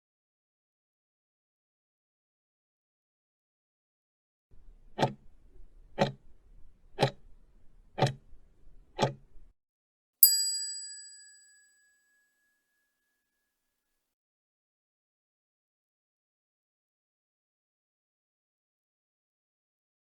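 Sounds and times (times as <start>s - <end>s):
clock ticks: 5.0s - 5.2s, 6.0s - 6.2s, 7.0s - 7.2s, 8.0s - 8.2s
bell ding: 10.2s - 12.9s.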